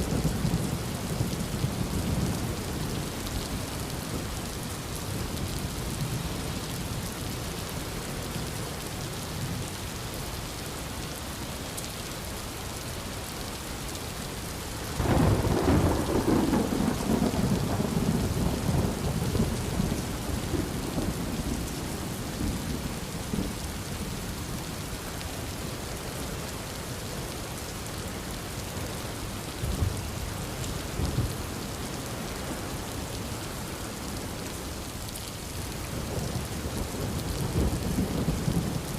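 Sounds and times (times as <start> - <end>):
heavy rain: 0.0 - 38.9
faint low thunder rumbles: 15.0 - 24.6, 36.0 - 38.9.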